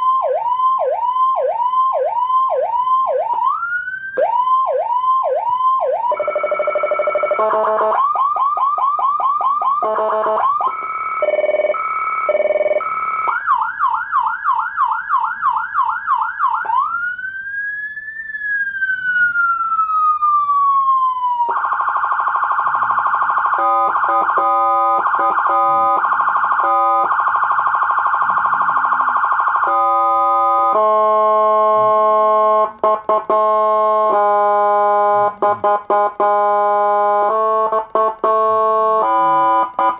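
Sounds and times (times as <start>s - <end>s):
electronic siren tones: 0.0s - 39.9s
siren horn tone blasts: 7.3s - 8.0s, 9.8s - 13.3s, 23.5s - 26.0s, 29.6s - 39.9s.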